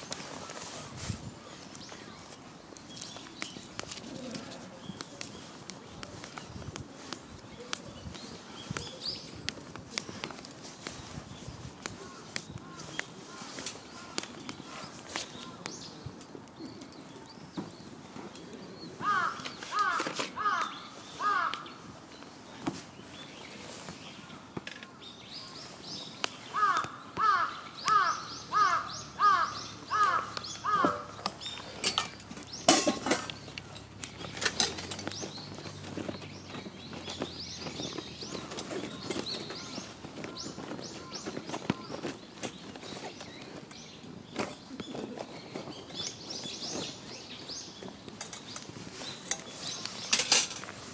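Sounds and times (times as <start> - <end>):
small birds chirping faintly: 0.0 - 50.9
crow cawing: 19.0 - 21.7, 26.5 - 31.1.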